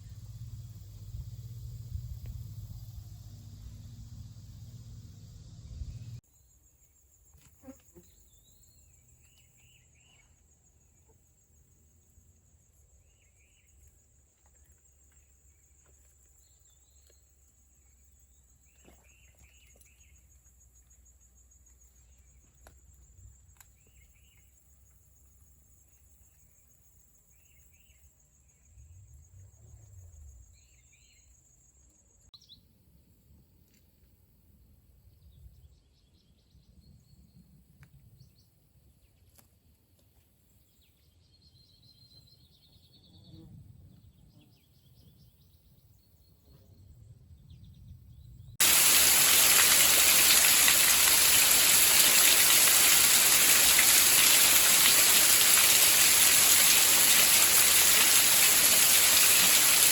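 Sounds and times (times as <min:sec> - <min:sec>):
high fast insect trill: 0:48.6 - 0:59.9.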